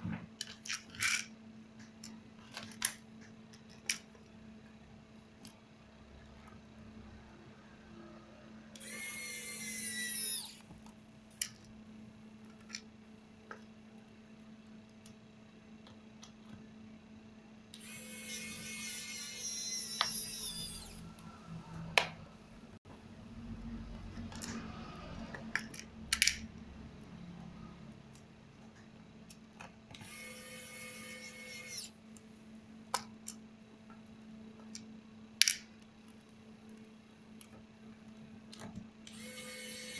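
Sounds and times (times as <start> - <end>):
electric screwdriver whirring: 8.8 - 10.7, 17.8 - 21.1, 39.1 - 39.9.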